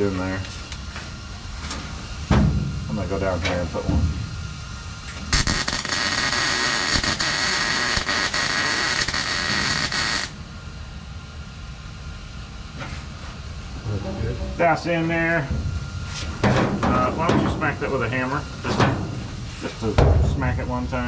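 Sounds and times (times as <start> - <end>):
welder crackling hiss: 5.0 - 10.4.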